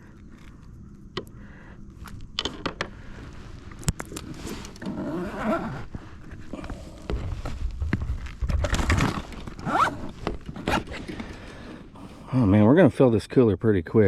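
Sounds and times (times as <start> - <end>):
scuffling rustle: 3.0 - 11.5.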